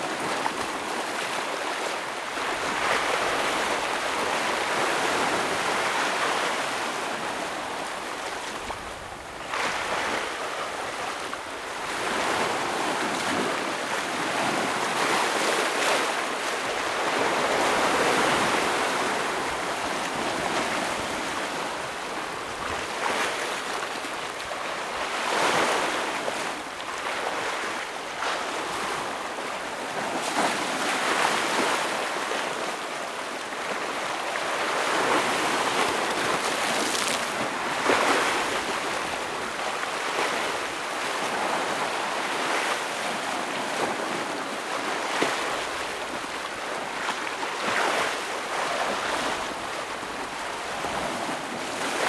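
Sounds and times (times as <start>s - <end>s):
ocean waves breaking on rocks: 11.8s - 52.0s.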